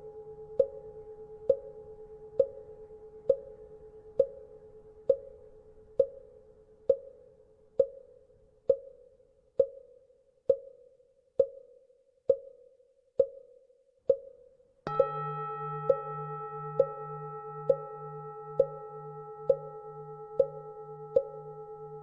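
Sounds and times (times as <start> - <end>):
temple bell hum: 14.9 - 22.0.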